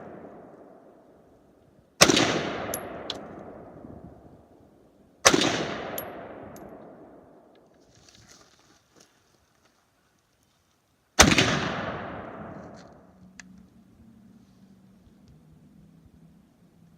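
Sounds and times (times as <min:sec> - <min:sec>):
rifle shots with echo: 0:00.0 - 0:01.0, 0:02.0 - 0:03.8, 0:05.2 - 0:07.4, 0:11.2 - 0:12.7.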